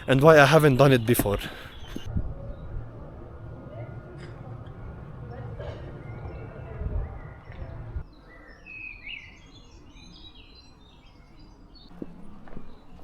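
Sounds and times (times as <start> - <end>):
songbird singing: 0.0 - 13.0
footsteps: 11.9 - 13.0.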